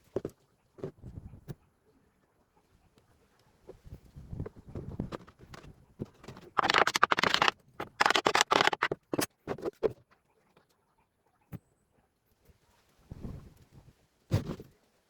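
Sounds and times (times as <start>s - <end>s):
loud rasping bursts: 6.6s - 9.3s
knocks and clatter: 6.6s - 9.6s.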